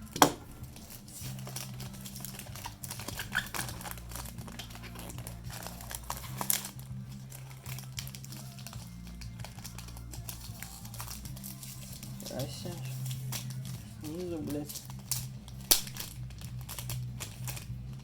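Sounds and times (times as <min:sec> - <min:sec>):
plastic wrap crinkling: 0:00.0 - 0:18.0
sharp plastic snap: 0:15.1 - 0:16.2.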